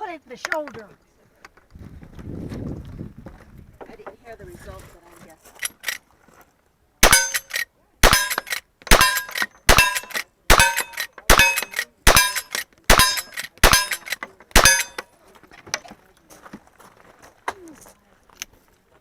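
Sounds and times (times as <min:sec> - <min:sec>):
steel targets clanging: 0:07.0 - 0:15.1.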